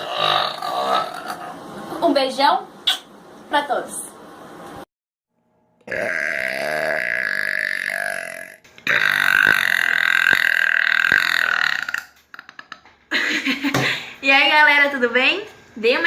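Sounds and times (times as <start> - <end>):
woman burping: 5.8 - 12.5.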